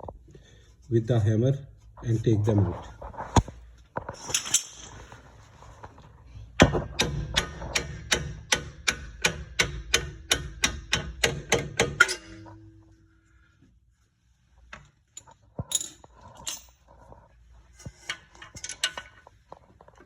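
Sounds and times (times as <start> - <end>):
hammer striking metal bolts: 6.6 - 12.7.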